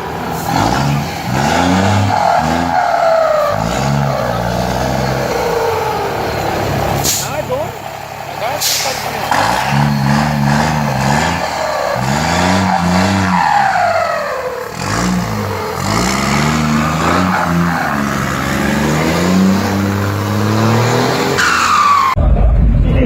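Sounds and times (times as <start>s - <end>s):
diesel truck engine revving: 0.0s - 22.2s.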